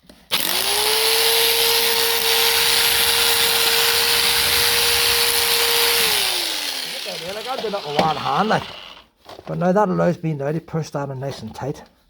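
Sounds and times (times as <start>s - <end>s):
hammer drill chiseling stone: 0.1s - 9.2s.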